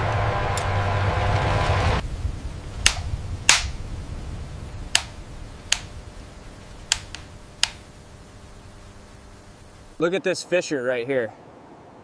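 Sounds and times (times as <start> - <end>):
sharp clicks: 2.8 - 3.8, 4.9 - 6.0, 6.8 - 7.9.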